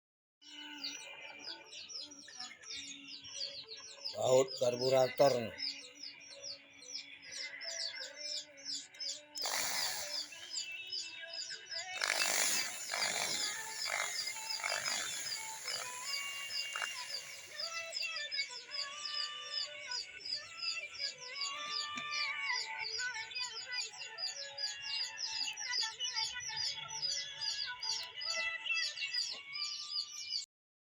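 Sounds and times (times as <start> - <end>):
background music: 0.4 - 29.8
small birds chirping: 0.4 - 30.5
power drill running: 9.4 - 10.7, 12.0 - 18.4.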